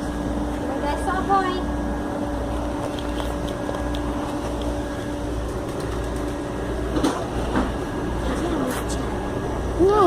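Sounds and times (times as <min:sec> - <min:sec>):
steady machine hum: 0:00.0 - 0:10.0.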